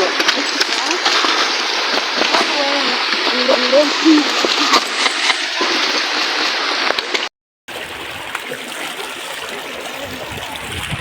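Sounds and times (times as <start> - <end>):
running water: 0.0 - 11.0.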